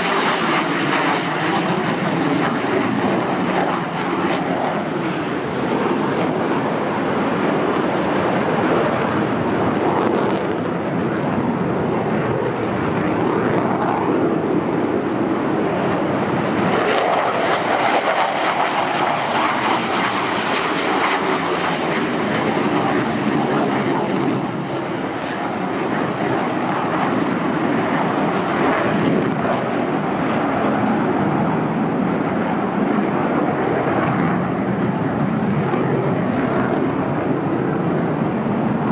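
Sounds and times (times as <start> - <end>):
jet engines roaring on takeoff: 0.0 - 38.9.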